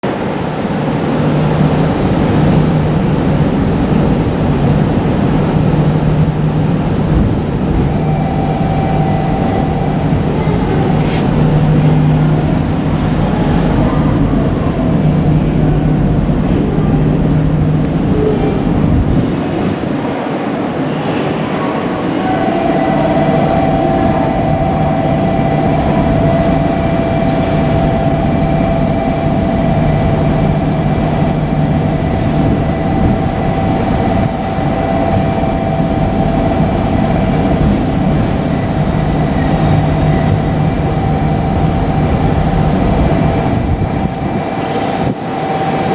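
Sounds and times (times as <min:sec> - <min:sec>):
diesel railcar engine humming: 0:00.0 - 0:45.9
high squeal from train: 0:20.9 - 0:45.9.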